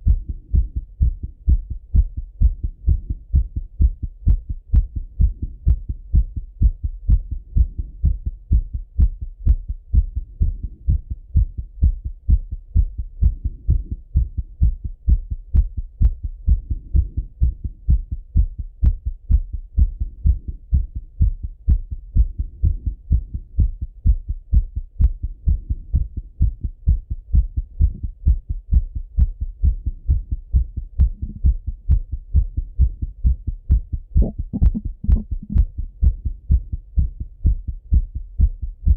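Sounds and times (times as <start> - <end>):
fast heartbeat through stethoscope: 0.0 - 38.9.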